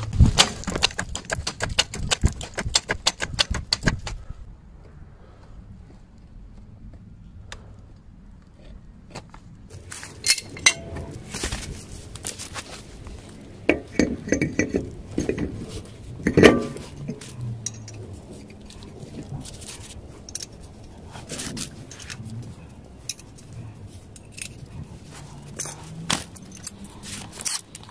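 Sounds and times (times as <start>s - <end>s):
metal tools clinking: 9.7s - 27.9s.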